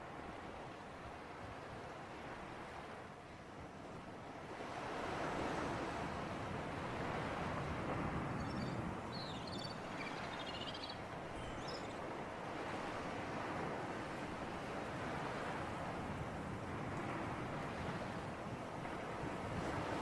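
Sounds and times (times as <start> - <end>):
sea breeze: 0.0 - 20.0
waves washing: 4.5 - 20.0.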